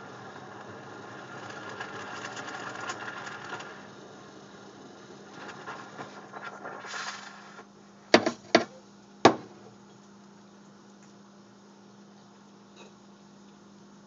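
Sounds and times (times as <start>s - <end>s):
steam wand hissing through milk: 0.0s - 7.7s
low steady hum: 0.0s - 14.0s
sharp knocks: 8.2s - 8.7s, 9.3s - 9.6s.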